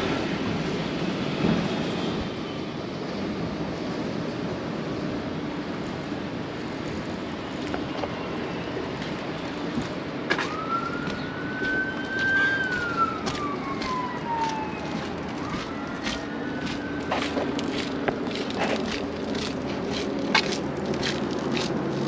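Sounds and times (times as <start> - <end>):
steady engine hum: 0.0 - 22.0
emergency vehicle siren wailing: 7.8 - 19.5.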